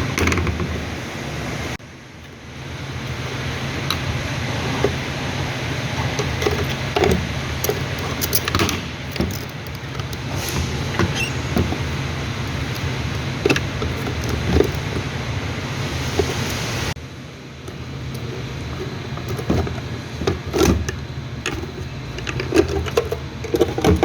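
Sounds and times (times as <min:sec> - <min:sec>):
low mechanical hum: 0:00.0 - 0:24.0
tools clicking and knocking: 0:06.1 - 0:10.3, 0:12.7 - 0:15.1, 0:17.7 - 0:24.0.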